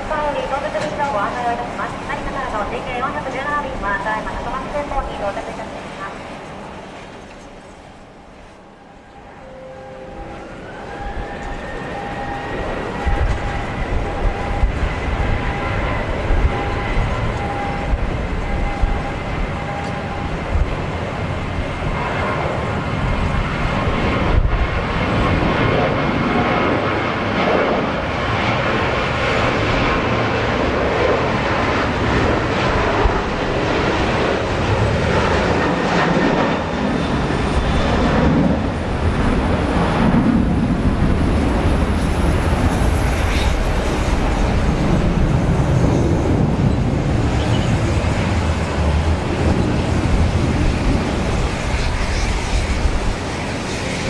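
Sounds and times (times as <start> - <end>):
jet engines running: 0.0 - 54.0
high whine rising in pitch: 8.6 - 22.1
gusting wind on microphone: 10.1 - 54.0.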